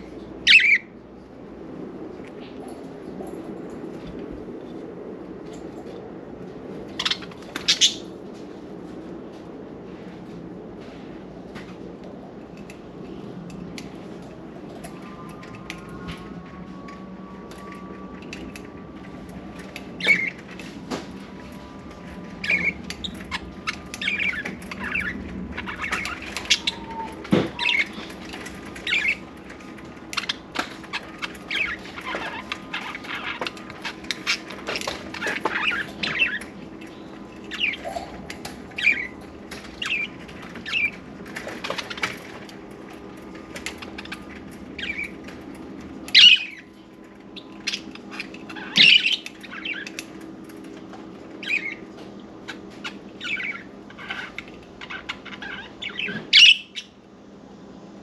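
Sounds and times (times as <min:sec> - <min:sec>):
faint steady hum: 0:00.0 - 0:58.0
budgerigars chirping: 0:00.5 - 0:00.9, 0:07.0 - 0:08.1, 0:22.4 - 0:29.3, 0:30.2 - 0:36.5, 0:38.8 - 0:41.0, 0:46.1 - 0:46.7, 0:47.4 - 0:50.1, 0:52.5 - 0:56.9.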